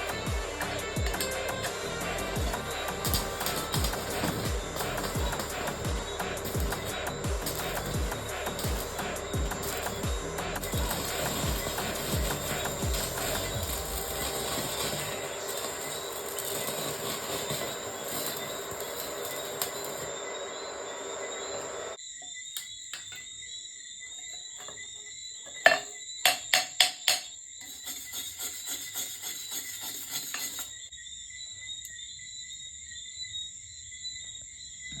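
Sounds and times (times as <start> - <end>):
arc welding crackling hiss: 0.0 - 22.0, 27.6 - 30.9
high steady whine: 0.0 - 22.0.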